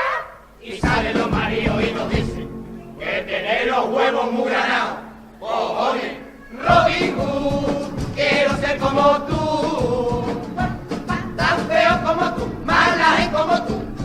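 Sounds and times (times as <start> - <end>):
group singing in chorus: 0.6 - 14.0
steady drum beat: 0.7 - 2.6, 6.6 - 14.0.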